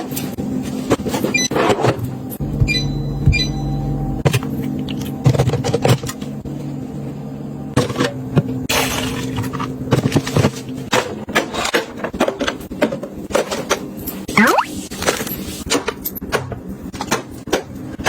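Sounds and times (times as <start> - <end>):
low steady hum: 2.4 - 5.0.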